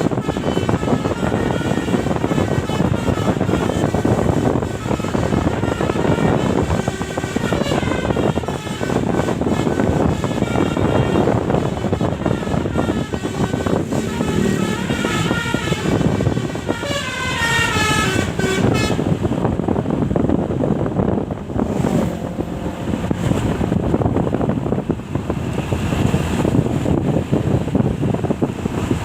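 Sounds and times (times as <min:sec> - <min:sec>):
musical air horn tune: 0:00.0 - 0:19.2
engine and road rumble: 0:00.0 - 0:29.0.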